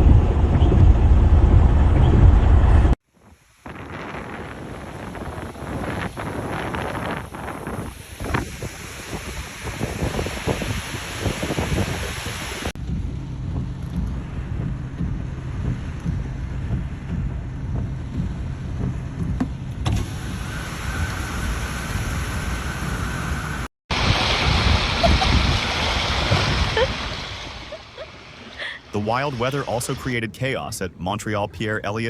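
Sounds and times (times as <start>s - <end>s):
low rumble: 0.0s - 3.0s, 12.7s - 31.8s
heavy rain and floodwater rushing: 3.8s - 30.7s.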